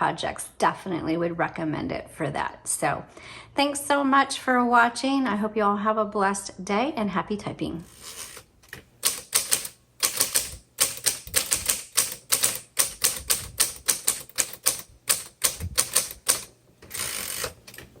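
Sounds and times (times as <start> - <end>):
typewriter rasp: 7.9 - 18.0
manual typewriter keys clacking: 9.0 - 18.0.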